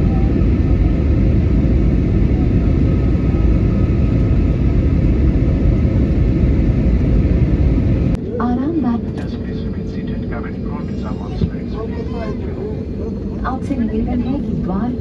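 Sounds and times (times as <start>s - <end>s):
airliner rumbling on the ground: 0.0s - 15.0s.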